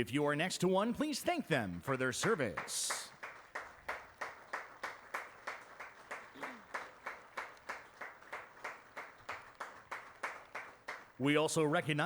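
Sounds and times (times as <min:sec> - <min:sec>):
crowd applause: 0:01.8 - 0:11.3
hands clapping close: 0:01.9 - 0:11.2.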